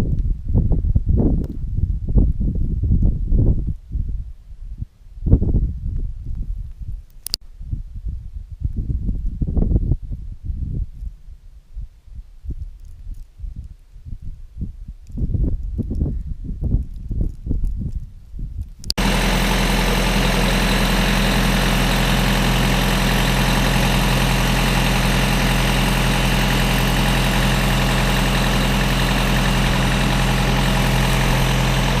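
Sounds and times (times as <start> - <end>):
tractor diesel engine idling: 19.0 - 32.0.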